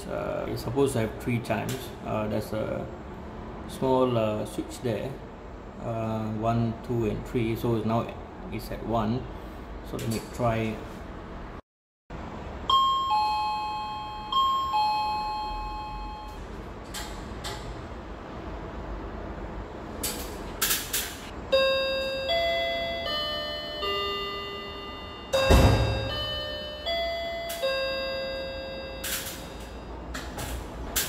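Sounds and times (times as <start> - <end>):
doorbell chime ding-dong: 12.6 - 16.5, 21.5 - 30.1
doorbell chime tune: 12.6 - 16.5, 21.5 - 30.1.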